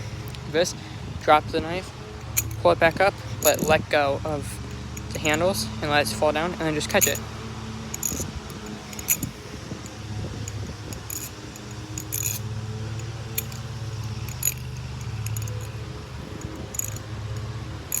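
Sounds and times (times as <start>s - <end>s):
butterfly knife metallic clicks: 3.3s - 3.8s, 7.9s - 15.7s, 16.4s - 17.0s.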